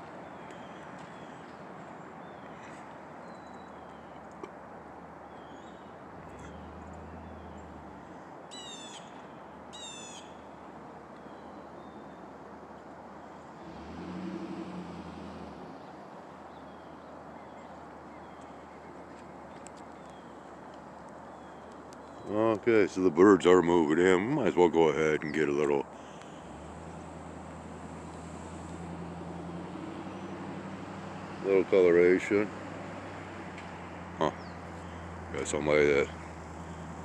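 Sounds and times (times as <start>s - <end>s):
birds chirping: 0.2s - 4.4s, 5.2s - 10.6s, 15.7s - 37.0s
vehicle engine hum: 3.7s - 37.0s
harsh bird calls: 5.4s - 10.5s, 34.2s - 36.9s.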